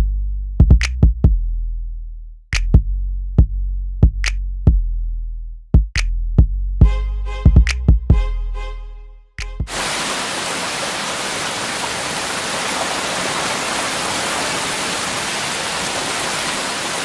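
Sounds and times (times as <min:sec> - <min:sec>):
drum machine beat: 0:05.8 - 0:08.3
heavy rain: 0:09.7 - 0:17.0.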